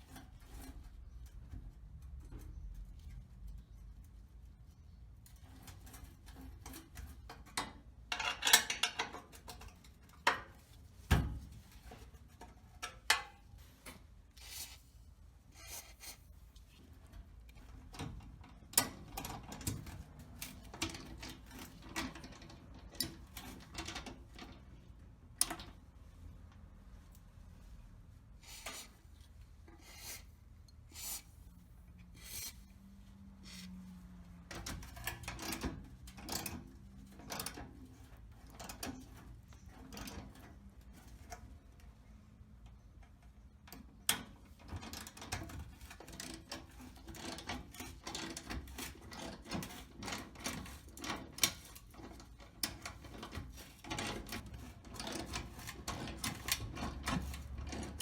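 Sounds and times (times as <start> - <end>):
clicks taps and scraping: 0.0 - 14.9.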